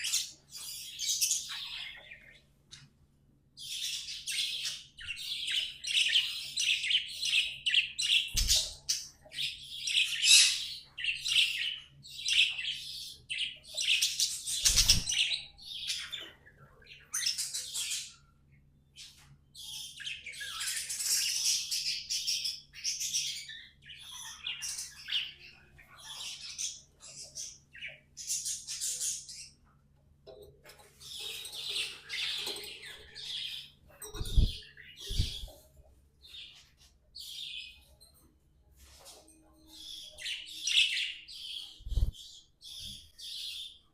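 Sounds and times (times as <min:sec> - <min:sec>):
budgerigars warbling and chattering: 0:03.6 - 0:18.3, 0:30.3 - 0:35.7.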